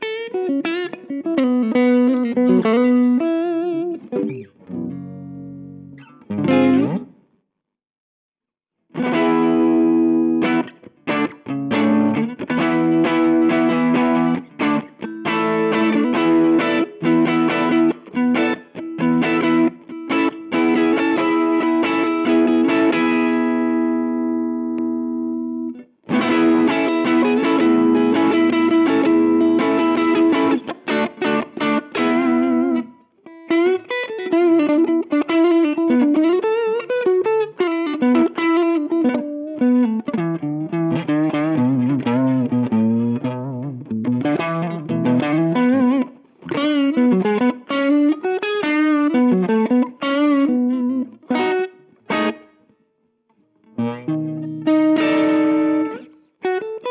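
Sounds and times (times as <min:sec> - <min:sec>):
electric guitar playing: 0:00.0 - 0:07.3, 0:08.9 - 0:56.9.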